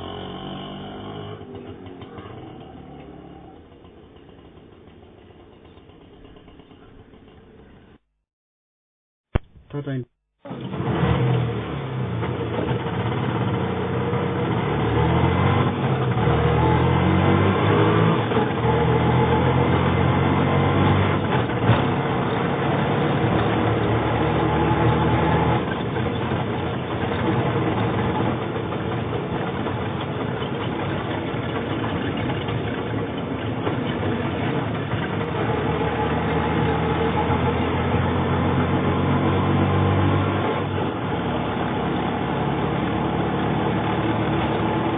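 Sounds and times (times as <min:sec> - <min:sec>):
auto rickshaw engine running: 0:00.0 - 0:08.1, 0:09.4 - 0:44.9
sharp knock: 0:09.4 - 0:09.8.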